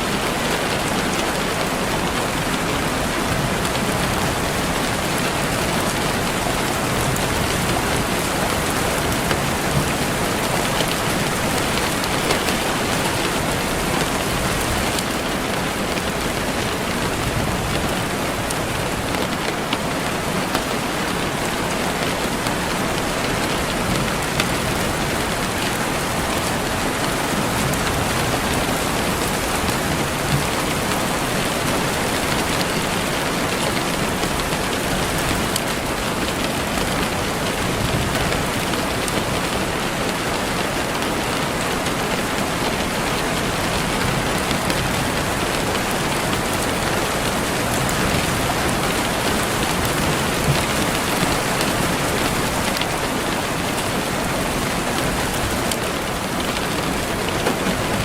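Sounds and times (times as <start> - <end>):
steady rain falling: 0.0 - 58.0.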